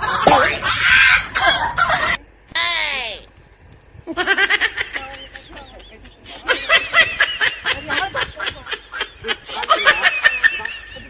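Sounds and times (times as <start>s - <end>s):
person laughing: 4.1s - 11.0s.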